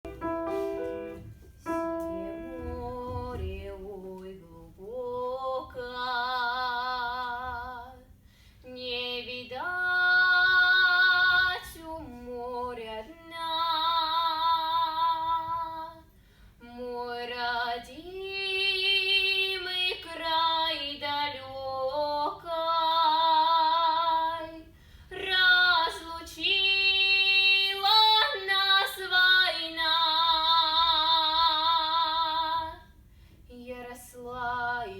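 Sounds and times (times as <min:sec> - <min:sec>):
short breaths: 0:08.2 - 0:08.6, 0:16.1 - 0:16.6, 0:24.7 - 0:25.1, 0:33.0 - 0:33.5.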